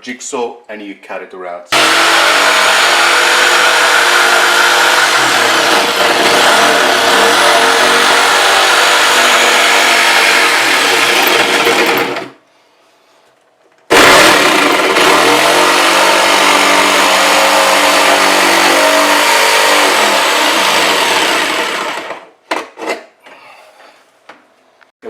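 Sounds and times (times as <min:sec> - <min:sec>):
electric jigsaw cutting wood: 0:01.7 - 0:12.4, 0:13.9 - 0:22.3.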